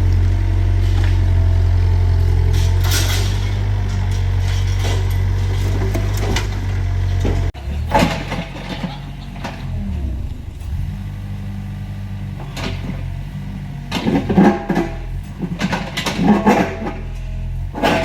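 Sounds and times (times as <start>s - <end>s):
excavator engine running: 0.0s - 18.0s
bucket clanking and scraping: 0.7s - 10.9s, 13.9s - 18.0s.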